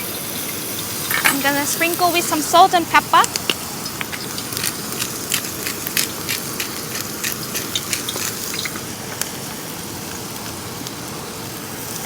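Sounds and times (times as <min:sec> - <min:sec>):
meat sizzling on a grill: 0:00.0 - 0:12.0
fat popping: 0:01.1 - 0:09.6.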